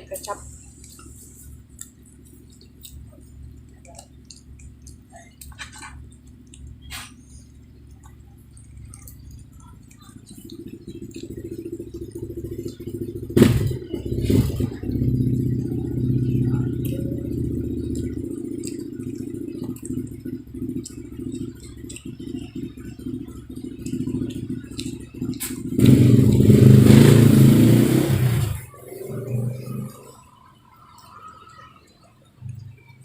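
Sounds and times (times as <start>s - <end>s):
small engine running: 10.0s - 29.9s.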